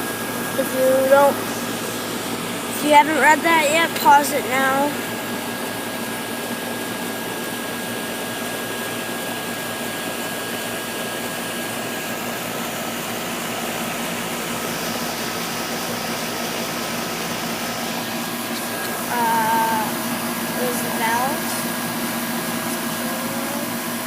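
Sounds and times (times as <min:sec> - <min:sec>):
compressor low hum: 0:00.0 - 0:24.0
condenser fan whirring: 0:00.0 - 0:24.0.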